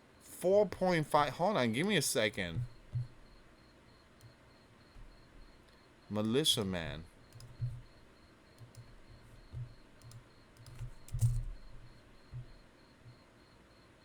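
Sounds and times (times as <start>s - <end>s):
soft low thumps: 2.5s - 3.5s, 7.4s - 8.0s, 8.9s - 10.0s, 10.8s - 12.6s
keyboard and mouse clicks: 7.3s - 7.9s, 8.6s - 8.9s, 9.5s - 13.2s.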